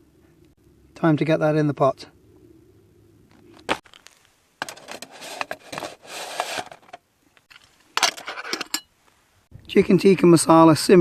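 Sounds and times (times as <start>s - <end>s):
food scraped into cook pot: 4.6s - 7.0s.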